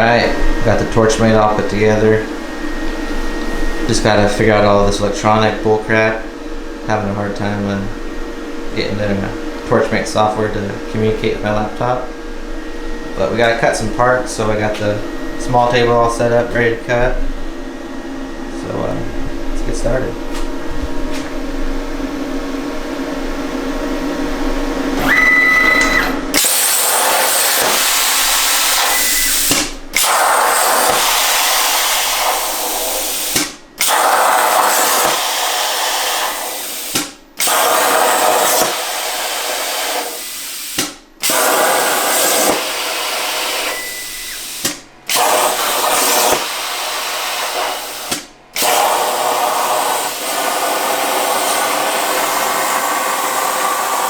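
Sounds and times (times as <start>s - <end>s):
plasma cutter hissing: 26.3s - 54.0s.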